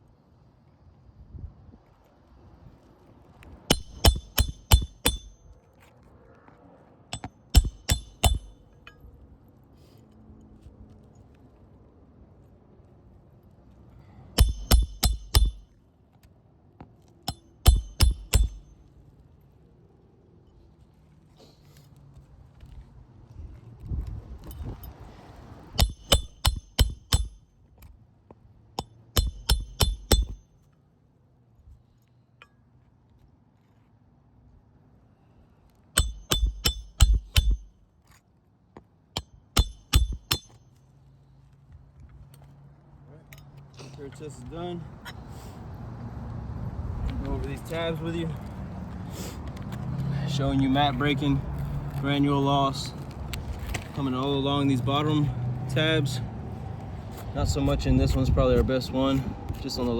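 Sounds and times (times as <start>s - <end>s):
hammer striking metal: 3.7s - 5.4s, 7.1s - 9.0s, 14.4s - 15.7s, 17.3s - 18.8s, 25.8s - 27.5s, 28.8s - 30.4s, 36.0s - 37.8s, 39.2s - 40.6s.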